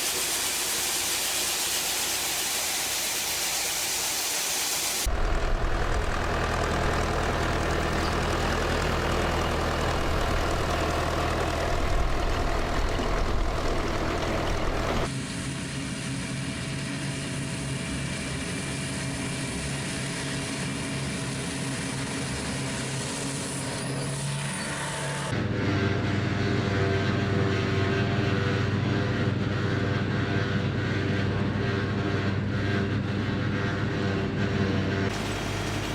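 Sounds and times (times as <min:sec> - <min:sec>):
heavy farm machinery engines: 0:00.0 - 0:35.9
quieter engine running: 0:05.0 - 0:15.2, 0:20.7 - 0:35.9.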